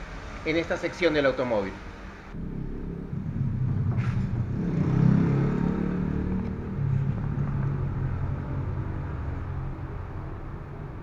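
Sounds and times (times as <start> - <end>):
vehicle engine rumbling: 0.0 - 11.0.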